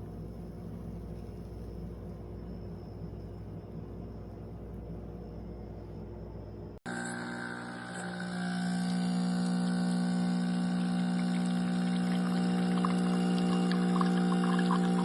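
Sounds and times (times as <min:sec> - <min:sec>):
espresso machine pump buzzing: 0:06.8 - 0:15.0.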